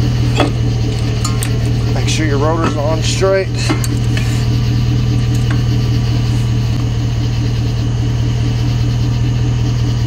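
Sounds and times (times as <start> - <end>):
engine idling: 0.0 - 10.0.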